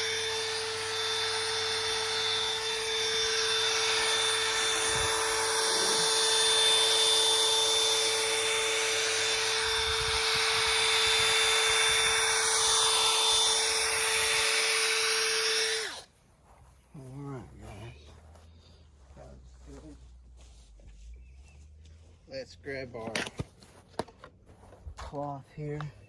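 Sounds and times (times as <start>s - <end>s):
electric drill motor whine: 0.0s - 16.1s.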